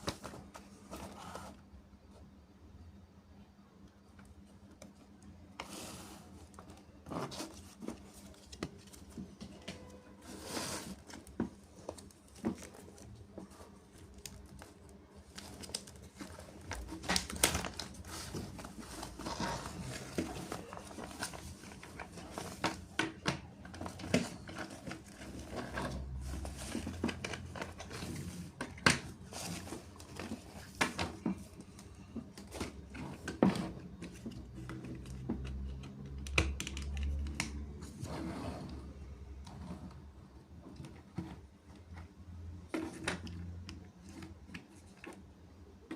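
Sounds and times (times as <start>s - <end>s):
plastic packaging crinkling: 11.2s - 23.0s.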